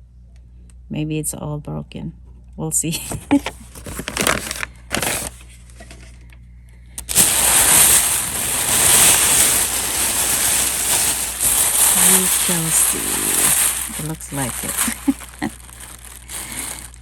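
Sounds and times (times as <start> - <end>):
bag rustling: 3.2 - 5.4, 7.0 - 17.0.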